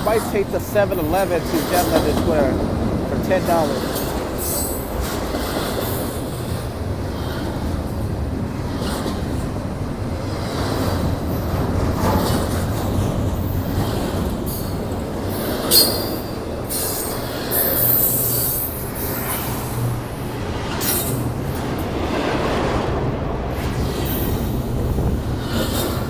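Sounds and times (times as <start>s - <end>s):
freight train wheels rumbling on rail: 0.0s - 26.0s
high-pitched wheel squeals: 15.7s - 18.8s.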